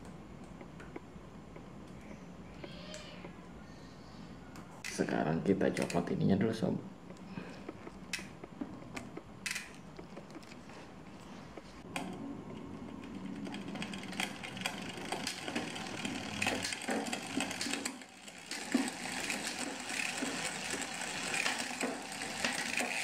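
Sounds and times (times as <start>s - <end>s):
tools and bicycle parts rattling: 7.6s - 11.7s, 13.0s - 23.0s.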